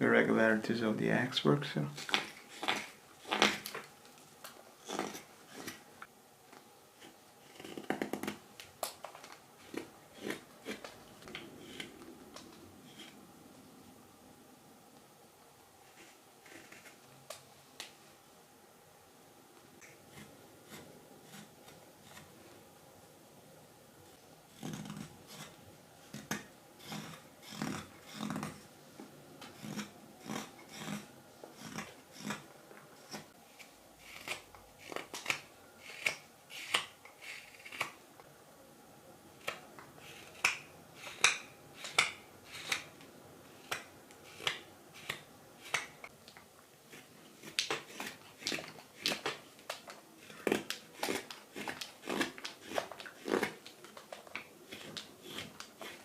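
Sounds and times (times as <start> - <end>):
knife carving wood shavings: 1.8 - 5.9, 6.9 - 13.2, 15.8 - 17.1, 19.8 - 22.6, 24.1 - 28.7, 29.4 - 38.0, 39.3 - 56.0.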